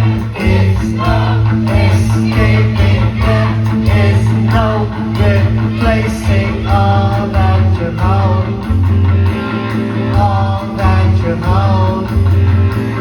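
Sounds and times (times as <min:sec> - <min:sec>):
bass line: 0:00.0 - 0:13.0
electric guitars: 0:00.0 - 0:13.0
live rock band playing: 0:00.0 - 0:13.0.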